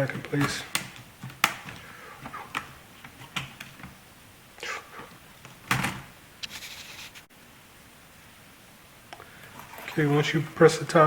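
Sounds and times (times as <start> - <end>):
plastic laptop deck snapping: 0.4 - 1.7.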